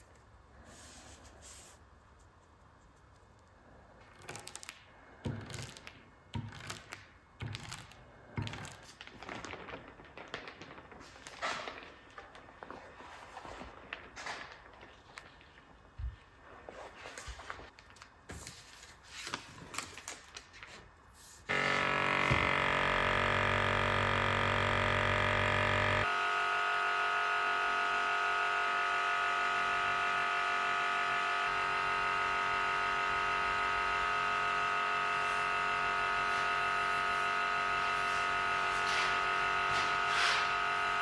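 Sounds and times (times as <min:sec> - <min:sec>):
electric vacuum pump humming: 0:21.5 - 0:41.0.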